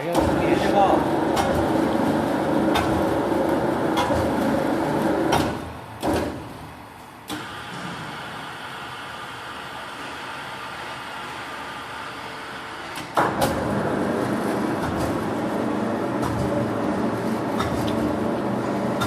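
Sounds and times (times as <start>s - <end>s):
machine clunks: 0.1s - 0.7s, 5.3s - 6.5s.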